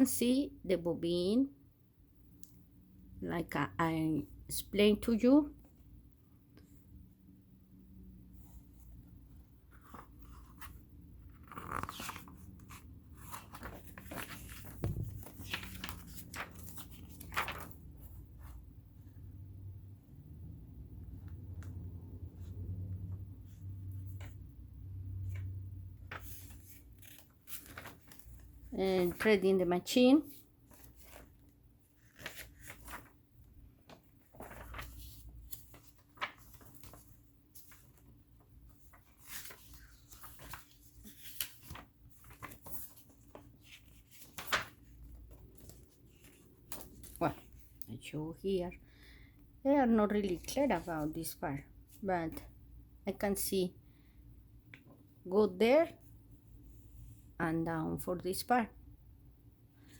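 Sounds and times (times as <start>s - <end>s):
faint rustles and scrapes: 33.9s - 38.1s.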